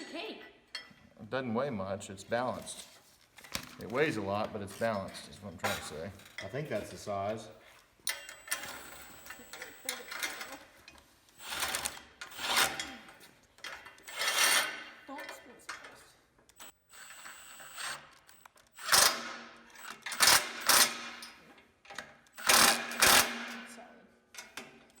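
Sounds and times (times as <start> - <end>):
ratchet wrench clicking: 13.6 - 14.8, 16.5 - 21.0, 22.2 - 23.4.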